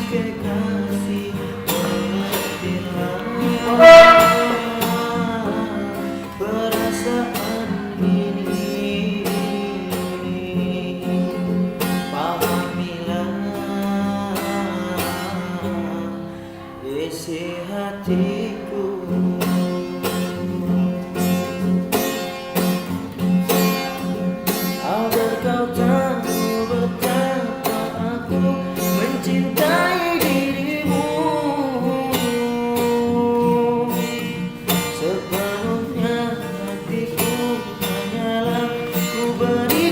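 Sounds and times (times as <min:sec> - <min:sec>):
strummed acoustic guitar: 0:00.0 - 0:39.9
students singing: 0:02.2 - 0:05.0.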